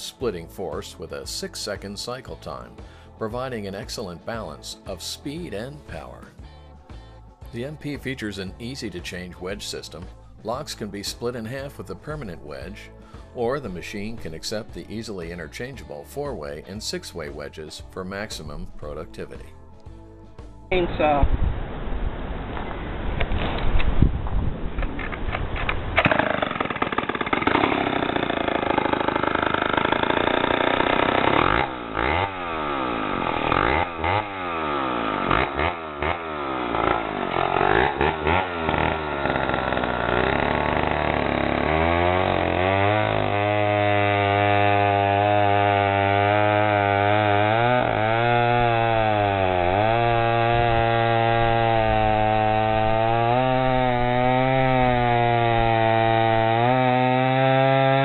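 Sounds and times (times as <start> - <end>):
chainsaw running and cutting: 7.6 - 19.5, 26.0 - 58.0.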